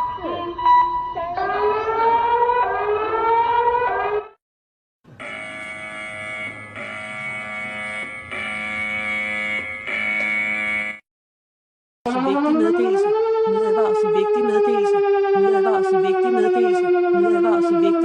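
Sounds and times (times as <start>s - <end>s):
harsh multi-tone alert tone: 5.1s - 11.0s, 12.1s - 18.0s
rising siren-like tone: 5.2s - 11.0s.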